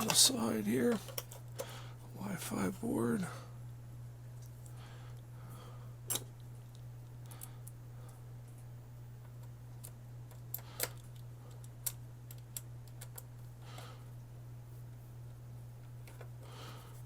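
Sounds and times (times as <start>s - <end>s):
steady low hum: 0.0s - 17.0s
clicks and taps of small parts: 9.2s - 13.3s.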